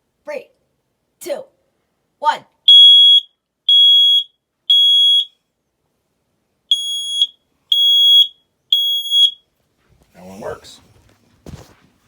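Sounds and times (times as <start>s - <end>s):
smoke alarm beeping: 2.7s - 5.4s, 6.7s - 9.5s.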